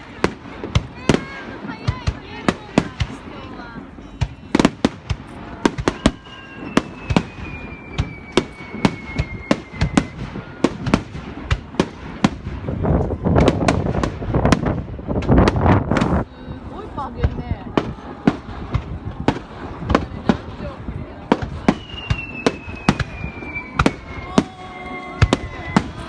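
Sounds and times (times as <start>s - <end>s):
fireworks bursting with sharp bangs: 0.0s - 26.0s
firework whistle falling in pitch: 5.8s - 10.9s, 21.6s - 26.0s.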